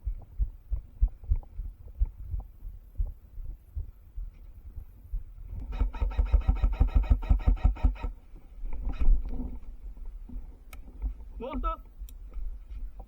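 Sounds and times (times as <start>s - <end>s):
airsoft gun firing bursts: 5.7s - 8.2s.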